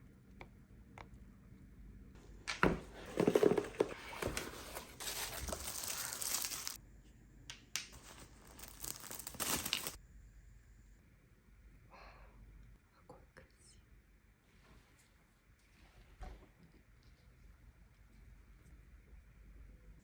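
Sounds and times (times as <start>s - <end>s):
packaging tearing and crinkling: 3.1s - 6.8s, 8.0s - 10.0s.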